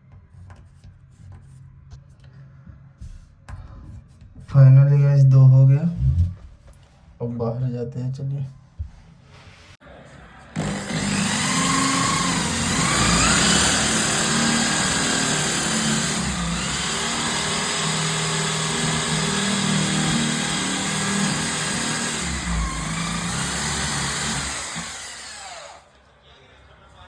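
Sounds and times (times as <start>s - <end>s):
electric power tool motor running: 10.6s - 25.8s.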